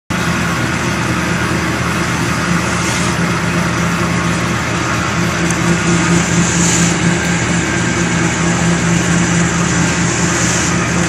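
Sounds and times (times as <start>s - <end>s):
wood chipper hum: 0.1s - 11.0s
dense rushing noise: 2.6s - 10.8s.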